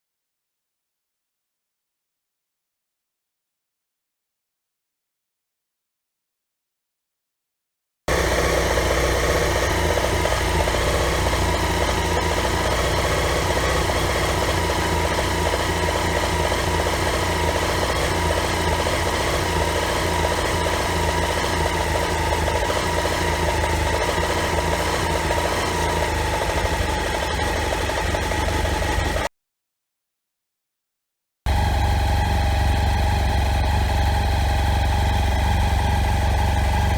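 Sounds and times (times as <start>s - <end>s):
motorcycle engine idling: 8.1s - 29.3s, 31.5s - 36.9s.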